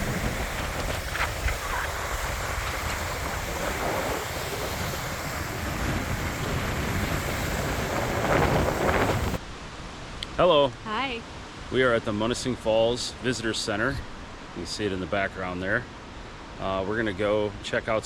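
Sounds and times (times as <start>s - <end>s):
wind buffeting microphone: 0.0s - 9.4s
rough waves: 0.0s - 18.0s.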